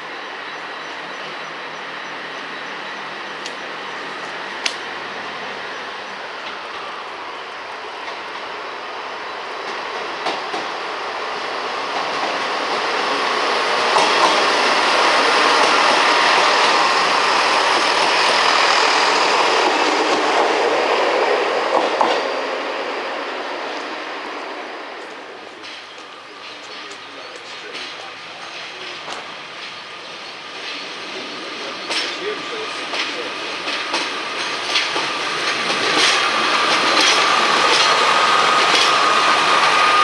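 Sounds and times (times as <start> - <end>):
train rumbling past: 0.0 - 40.0
wheels clicking over rail joints: 31.8 - 39.7.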